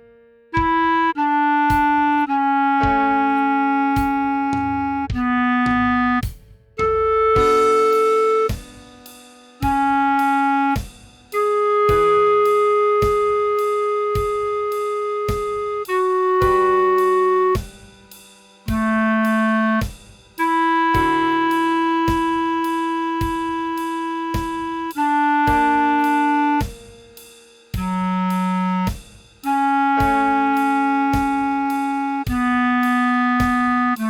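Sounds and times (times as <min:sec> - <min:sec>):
clarinet slow melody: 0:00.0 - 0:18.0, 0:18.6 - 0:27.0, 0:27.8 - 0:34.0.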